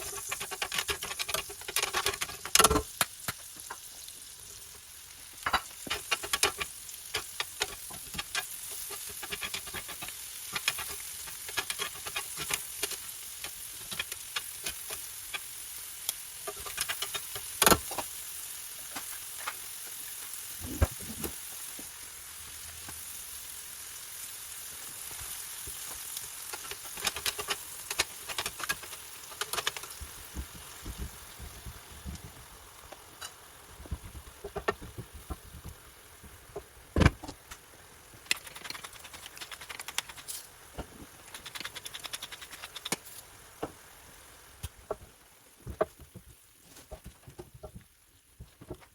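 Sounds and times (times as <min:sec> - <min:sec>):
fat popping and crackling: 0:00.0 - 0:03.8, 0:05.4 - 0:15.4, 0:26.5 - 0:43.0
steak sizzling in a pan: 0:00.0 - 0:44.9.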